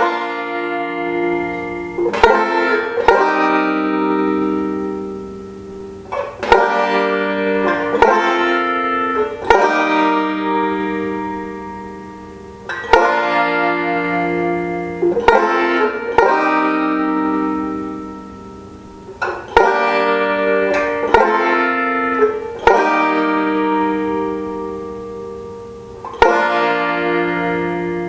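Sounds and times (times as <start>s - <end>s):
banjo chords ringing: 0.0s - 28.0s.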